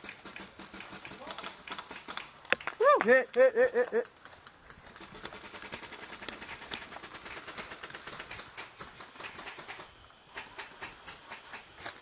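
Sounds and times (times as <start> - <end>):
airsoft guns firing: 0.0 - 2.8, 5.2 - 11.7.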